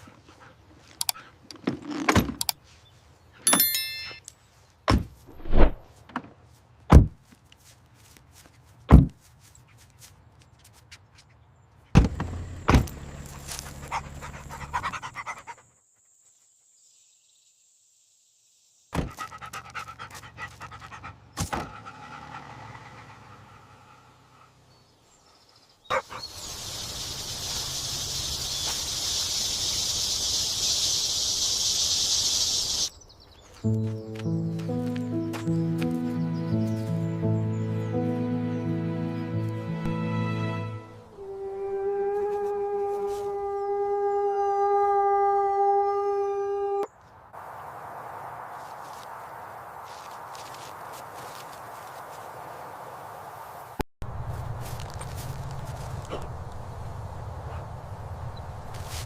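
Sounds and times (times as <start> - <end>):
dog panting: 13.4 - 15.7, 19.1 - 24.5
steady high hiss: 26.4 - 32.9.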